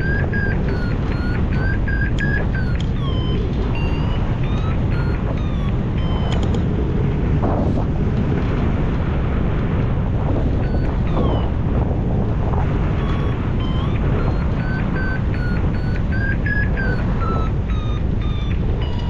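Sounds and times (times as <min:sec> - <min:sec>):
short electronic beeps: 0:00.0 - 0:06.5, 0:10.6 - 0:11.6, 0:13.0 - 0:19.0
wind buffeting microphone: 0:00.0 - 0:19.0.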